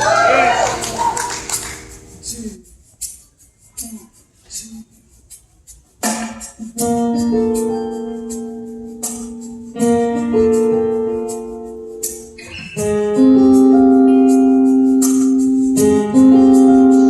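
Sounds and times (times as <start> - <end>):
acoustic band playing chords: 0.0 - 2.5, 6.0 - 17.0
shaker rattle: 0.1 - 12.4.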